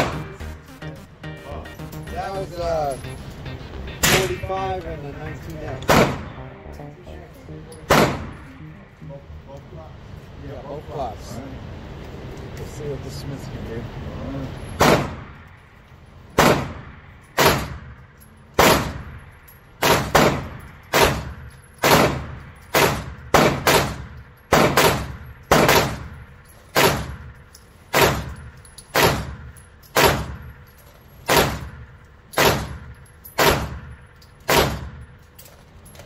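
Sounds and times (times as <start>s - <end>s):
pistol shots with echo: 5.8s - 6.4s, 7.9s - 8.5s, 14.8s - 15.4s, 16.4s - 18.0s, 18.6s - 19.2s, 19.8s - 30.5s, 31.3s - 35.1s.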